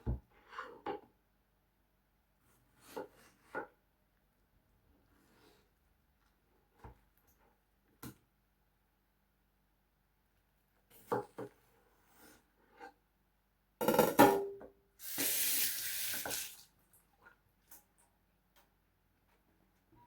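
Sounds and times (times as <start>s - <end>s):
kitchen tap running: 15.0s - 16.7s.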